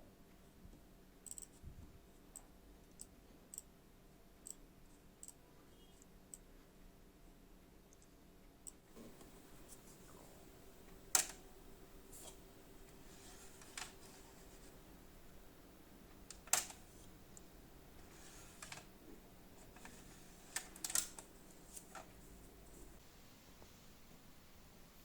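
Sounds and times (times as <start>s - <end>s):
faint steady hum: 0.0s - 25.0s
laptop keyboard typing clicks: 1.2s - 1.6s.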